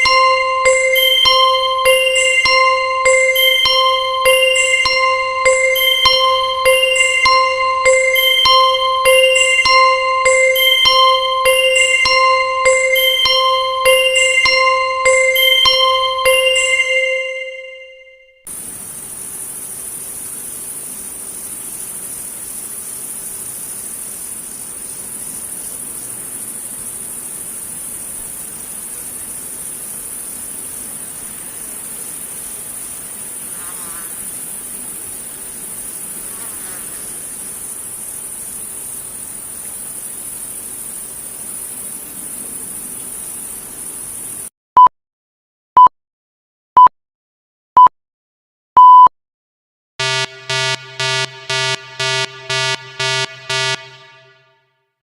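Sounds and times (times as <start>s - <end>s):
high-pitched insect chorus: 0.0s - 14.4s, 18.5s - 44.5s
long beep: 0.0s - 18.5s, 50.0s - 54.6s
short beeps: 48.8s - 49.1s, 50.0s - 54.6s.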